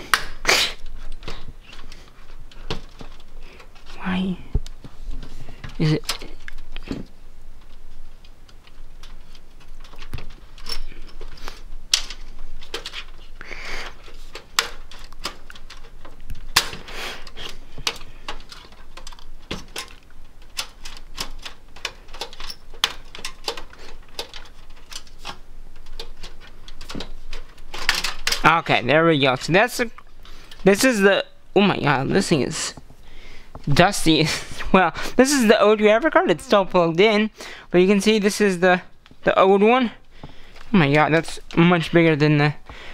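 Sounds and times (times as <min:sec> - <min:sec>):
metal and plastic clicks and rattles: 0:00.8 - 0:31.0.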